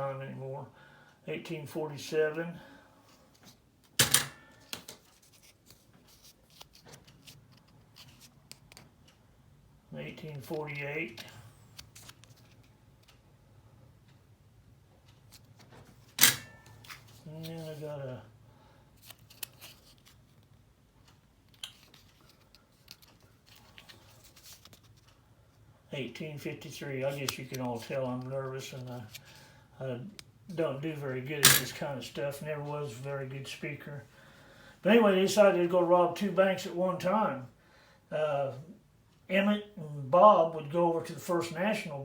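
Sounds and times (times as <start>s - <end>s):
small clicks and rubbing: 4.6s - 9.2s, 10.2s - 13.2s, 19.0s - 25.2s
coins clicking in handling: 31.4s - 31.8s.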